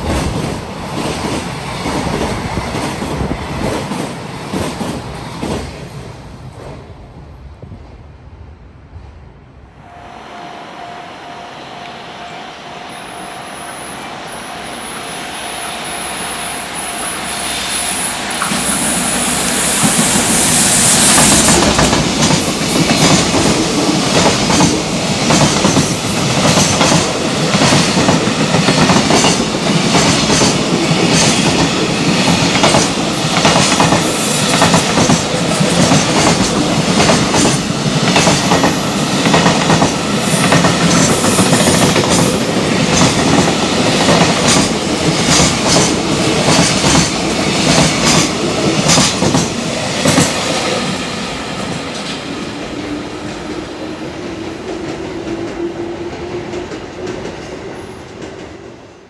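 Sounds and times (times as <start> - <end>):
freight train passing: 0.0 - 59.0.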